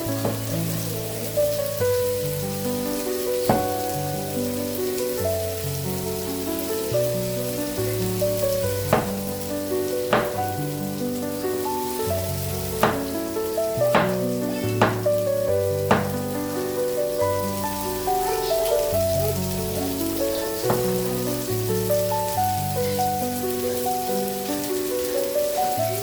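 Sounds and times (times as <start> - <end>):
steady hiss: 0.0 - 26.0
sharp knocks: 0.2 - 0.6, 3.5 - 4.0, 8.8 - 9.4, 10.1 - 10.7, 12.8 - 13.2, 13.9 - 16.4, 20.6 - 21.1.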